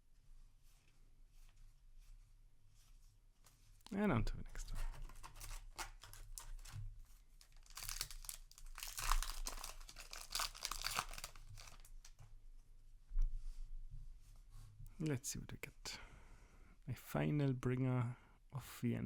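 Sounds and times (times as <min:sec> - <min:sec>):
foil wrapper tearing and crinkling: 0:04.9 - 0:06.8, 0:07.4 - 0:12.1.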